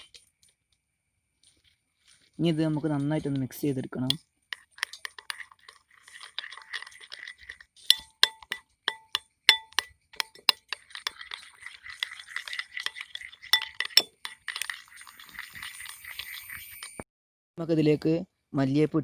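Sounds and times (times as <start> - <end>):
whisk clinking against bowl: 4.1 - 17.0.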